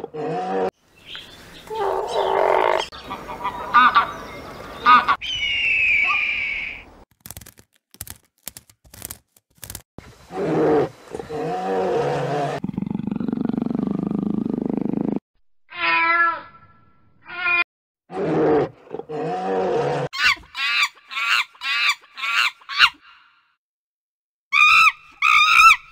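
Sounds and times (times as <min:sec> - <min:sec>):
deep roar-like animal calls: 0:10.3 - 0:15.2.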